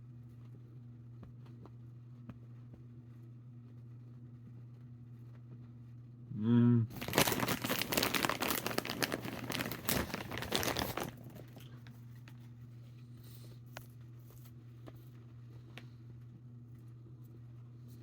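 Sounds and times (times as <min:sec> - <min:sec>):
steady low hum: 0:00.0 - 0:18.0
popcorn bag crinkling: 0:06.9 - 0:12.4.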